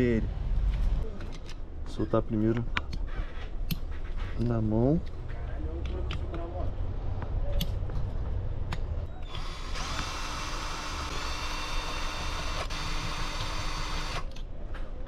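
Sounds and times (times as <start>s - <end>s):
cordless drill whirring: 9.2s - 14.4s.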